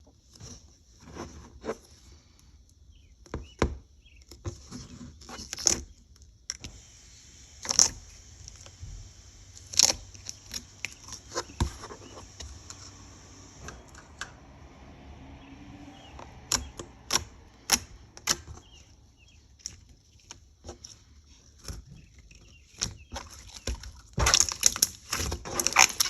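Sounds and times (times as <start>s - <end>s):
faint steady hiss: 5.4s - 26.0s
ice slime crackling and popping: 9.5s - 11.7s, 23.2s - 26.0s.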